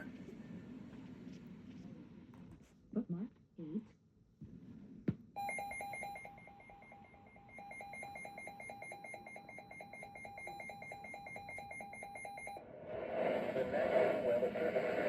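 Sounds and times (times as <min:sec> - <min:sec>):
pulsed electronic alarm beep: 0:05.4 - 0:12.6.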